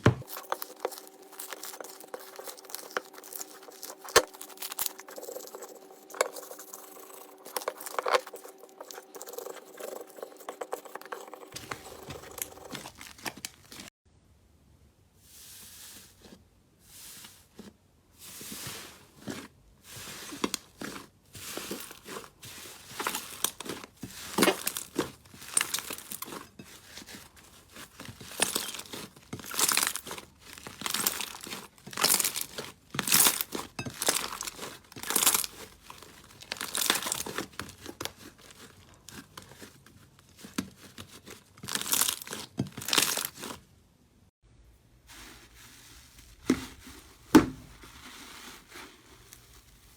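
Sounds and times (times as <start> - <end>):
slime squelching and crackling: 0.2 - 13.9, 20.0 - 43.6.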